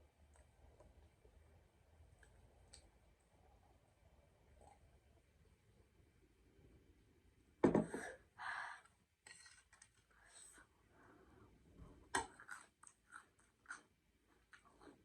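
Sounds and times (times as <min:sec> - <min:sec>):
close-up chewing and mouth noises: 0:12.0 - 0:15.0.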